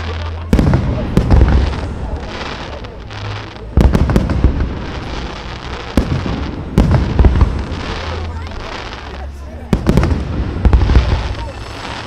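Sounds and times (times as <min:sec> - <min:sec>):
fireworks bangs and crackles: 0:00.0 - 0:12.0
fireworks booming: 0:00.0 - 0:12.0.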